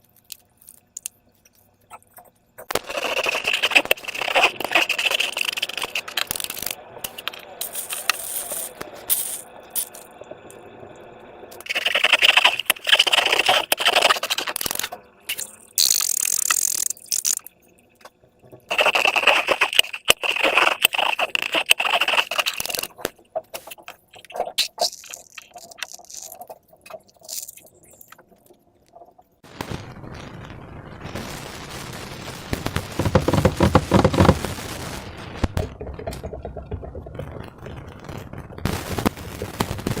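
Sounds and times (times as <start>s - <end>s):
slime crackling and popping: 2.7s - 10.1s, 18.7s - 28.3s
small clicks: 11.5s - 29.3s.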